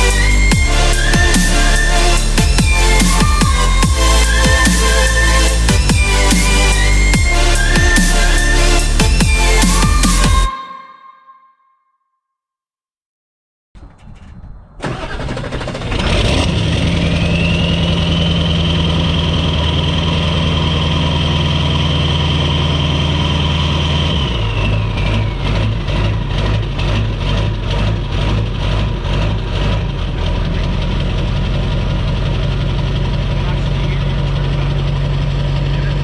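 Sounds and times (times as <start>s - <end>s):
diesel engine cranking and running: 0.0s - 10.5s, 14.0s - 36.0s
high steady turbo whistle: 0.0s - 11.5s.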